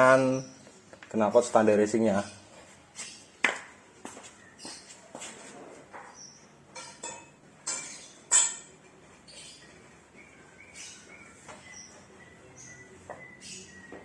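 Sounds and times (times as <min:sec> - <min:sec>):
faint bird chirps: 0:09.1 - 0:14.0.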